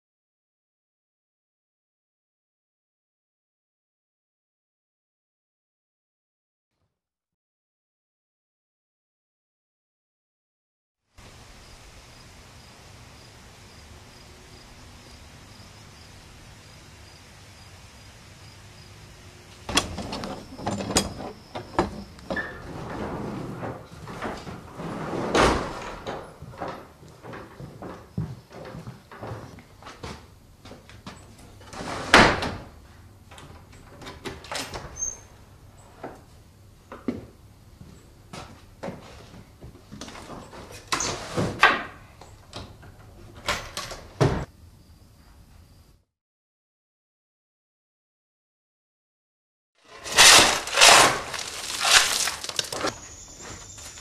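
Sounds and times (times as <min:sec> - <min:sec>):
objects knocking and scraping: 0:19.7 - 0:30.2, 0:49.9 - 0:54.0.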